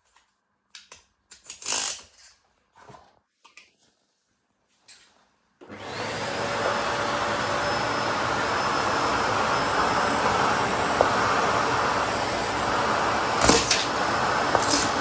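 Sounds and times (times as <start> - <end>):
vacuum cleaner running: 5.6 - 15.0.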